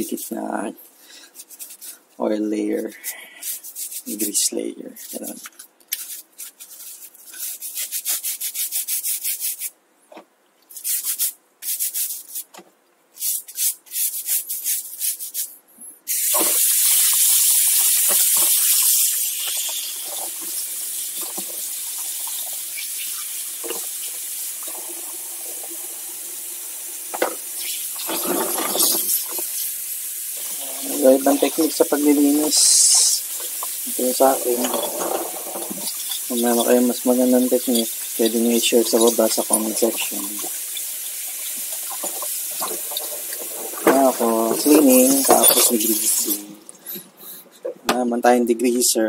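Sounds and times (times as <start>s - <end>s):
brush scrubbing metal: 1.4s - 2.0s, 2.8s - 9.7s, 10.7s - 12.5s, 13.2s - 15.5s, 16.5s - 29.8s, 30.4s - 46.6s
tap water running: 16.1s - 46.8s.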